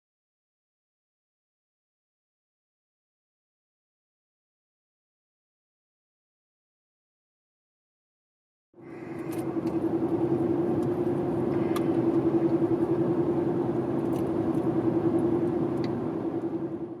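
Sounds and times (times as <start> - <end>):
car road noise: 8.8 - 17.0
droning hum: 8.8 - 17.0.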